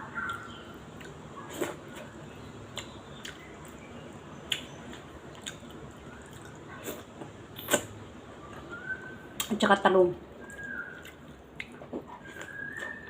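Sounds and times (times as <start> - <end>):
person chewing wetly: 2.7 - 3.8, 4.5 - 8.0, 10.4 - 13.0.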